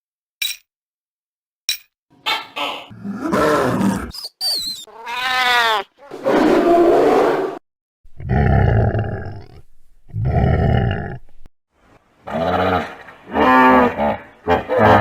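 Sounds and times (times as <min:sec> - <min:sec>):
animal roar: 0:02.9 - 0:04.2, 0:04.9 - 0:11.3, 0:12.2 - 0:15.0.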